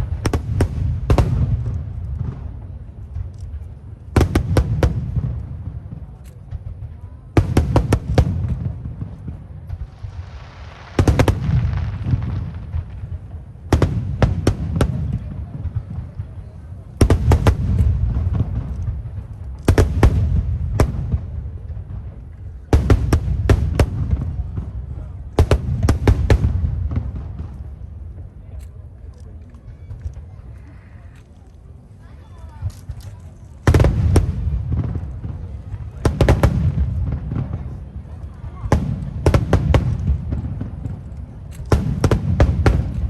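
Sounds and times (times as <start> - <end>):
fireworks bursting: 0.0 - 30.8, 31.6 - 43.0
hissing crackle: 7.4 - 28.3.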